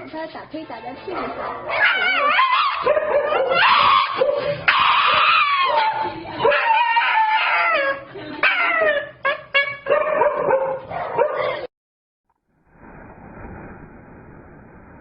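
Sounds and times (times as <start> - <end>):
dog whining and yipping: 1.7 - 10.0.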